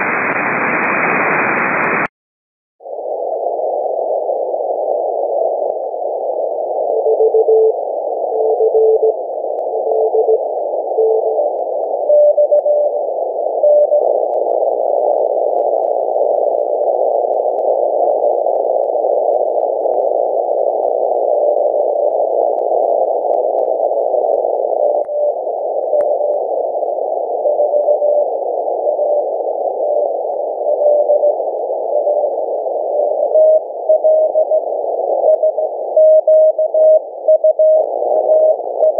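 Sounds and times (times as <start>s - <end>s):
steady rushing radio noise: 0.0s - 2.1s
morse code tones: 7.0s - 7.8s, 8.4s - 9.2s, 11.0s - 11.4s, 35.2s - 38.9s.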